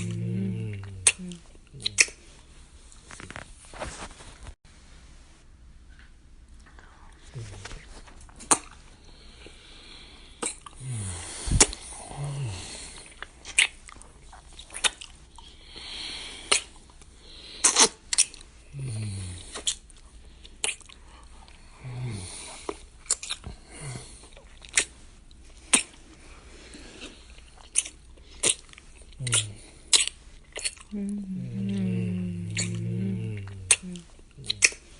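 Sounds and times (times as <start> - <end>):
low hums: 0.0 - 2.5, 30.9 - 34.9
wet kissing lip smacks: 1.0 - 2.2, 13.5 - 13.8, 16.5 - 16.7, 17.6 - 18.4, 29.2 - 30.8, 33.7 - 34.8
soft breathing: 8.9 - 13.4.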